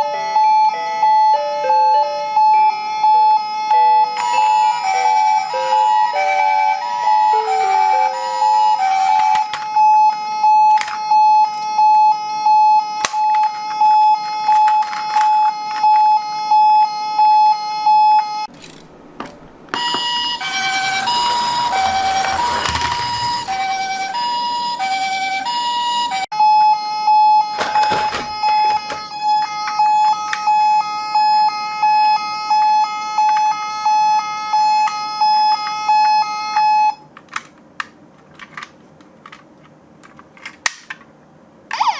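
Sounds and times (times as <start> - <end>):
two-note high-low siren: 0.0 - 14.6, 19.7 - 27.5
ambulance siren pulsing: 0.0 - 18.5, 19.4 - 37.1.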